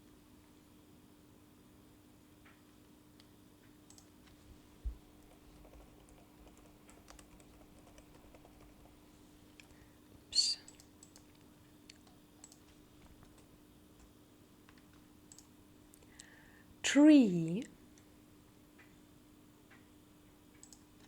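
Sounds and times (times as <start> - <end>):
faint clicks: 3.2 - 8.9, 10.6 - 14.1, 14.7 - 16.3, 20.6 - 20.8
low steady hum: 3.9 - 19.3.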